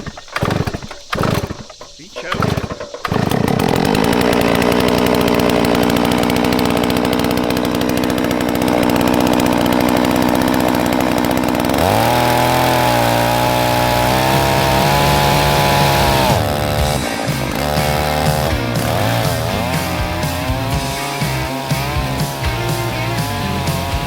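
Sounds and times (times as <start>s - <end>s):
chainsaw running hard: 0.0s - 24.0s.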